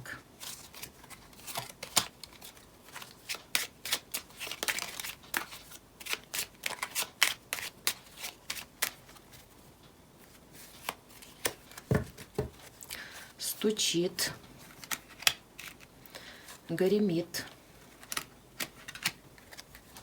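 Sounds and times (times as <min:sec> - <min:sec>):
cards being shuffled: 0:00.4 - 0:09.5, 0:14.6 - 0:16.6, 0:17.8 - 0:20.0.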